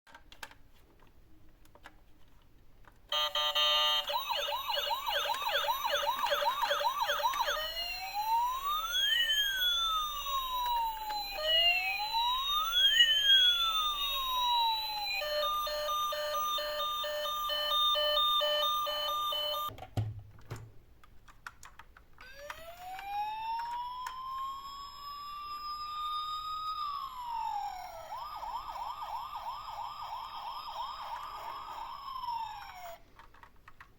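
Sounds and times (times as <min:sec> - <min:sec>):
emergency vehicle siren: 0:03.1 - 0:19.7, 0:22.2 - 0:33.0.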